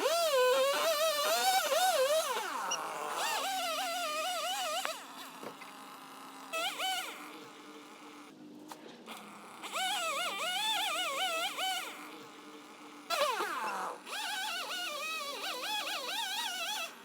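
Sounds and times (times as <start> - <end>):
chainsaw revving: 0.0 - 5.7.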